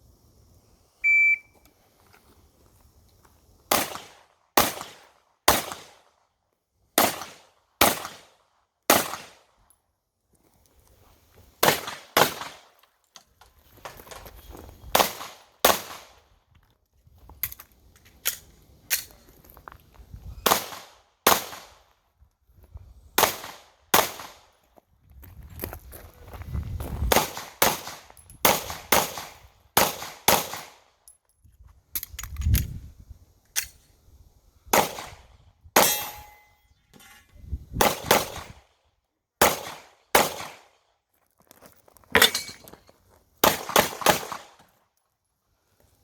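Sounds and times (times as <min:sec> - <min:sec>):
pistol shots: 0:03.7 - 0:06.0, 0:07.0 - 0:08.3, 0:08.9 - 0:09.4, 0:11.6 - 0:12.6, 0:15.0 - 0:16.1, 0:20.4 - 0:21.8, 0:23.2 - 0:24.4, 0:27.1 - 0:30.8, 0:34.7 - 0:35.2, 0:39.4 - 0:40.7, 0:43.4 - 0:44.6.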